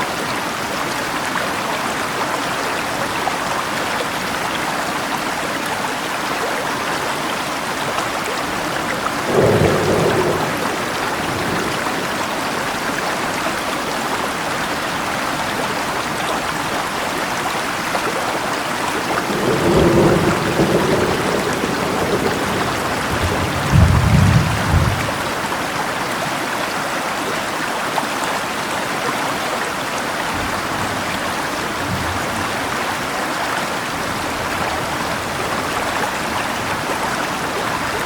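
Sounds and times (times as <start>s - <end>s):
river water running: 0.0s - 23.8s, 24.6s - 38.0s
steady rain: 0.0s - 38.0s
low thunder rumbles: 9.1s - 12.8s, 19.2s - 25.5s.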